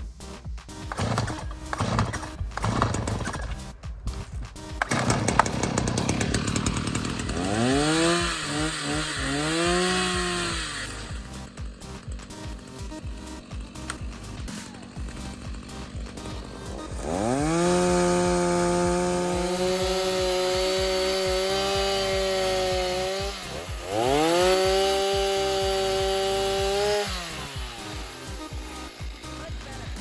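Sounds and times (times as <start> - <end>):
chainsaw engine revving: 0.2 - 3.8, 4.6 - 30.0.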